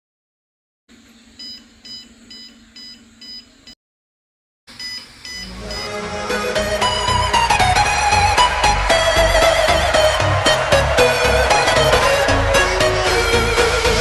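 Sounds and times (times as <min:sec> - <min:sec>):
high buzzer beeping: 0:01.4 - 0:03.5, 0:04.7 - 0:06.0
background music: 0:05.5 - 0:14.0.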